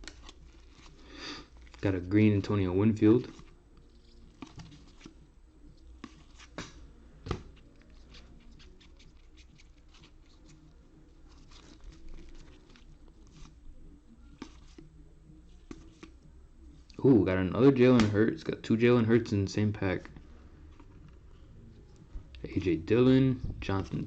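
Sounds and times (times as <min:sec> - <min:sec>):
trading cards rustling and clicking: 0:00.0 - 0:05.2, 0:05.9 - 0:13.6, 0:14.2 - 0:14.9, 0:15.5 - 0:16.2.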